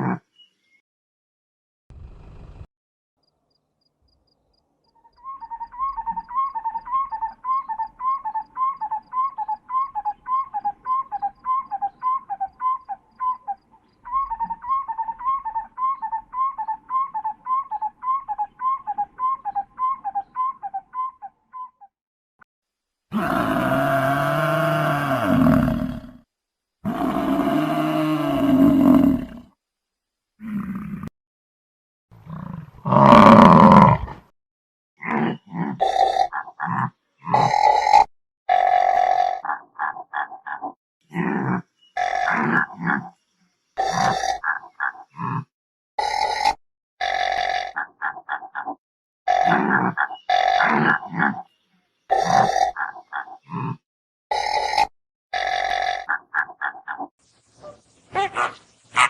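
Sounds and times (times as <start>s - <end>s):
animal roars: 0.0s - 0.3s, 23.1s - 26.2s, 26.8s - 29.5s, 30.4s - 31.1s, 32.2s - 34.3s, 35.0s - 43.2s, 43.8s - 48.8s, 49.4s - 51.4s, 52.1s - 53.8s
high chirping animal calls: 4.8s - 21.9s, 35.2s - 43.2s, 43.8s - 45.4s, 46.0s - 53.8s, 54.6s - 59.0s.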